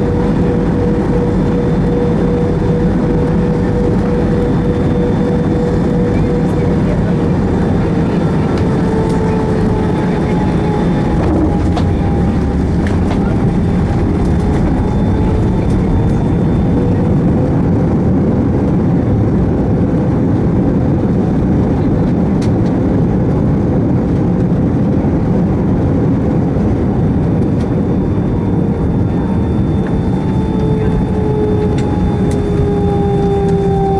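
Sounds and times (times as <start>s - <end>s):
faint whines drifting in pitch: 0.0s - 18.6s, 26.2s - 33.9s
jet engines and wheels roaring: 0.0s - 33.9s.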